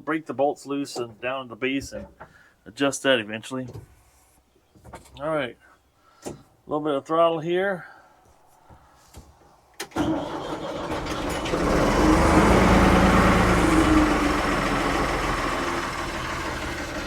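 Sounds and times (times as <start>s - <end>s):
backhoe diesel engine revving: 10.0s - 17.0s.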